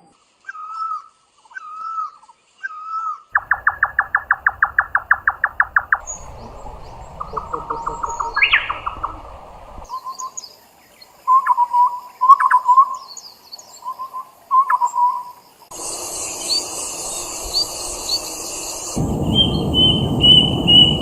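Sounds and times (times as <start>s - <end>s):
bird hooting notes: 3.4s - 9.9s, 15.8s - 21.0s
bird rising chirps: 3.4s - 10.0s, 15.7s - 21.0s
background hiss: 3.4s - 11.2s, 15.4s - 21.0s.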